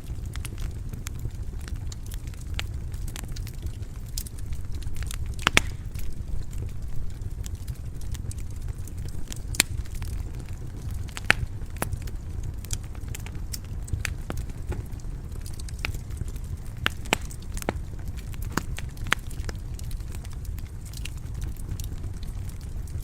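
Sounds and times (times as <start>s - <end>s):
fire crackling and popping: 0.0s - 23.0s
fire flames rumbling: 0.0s - 23.0s.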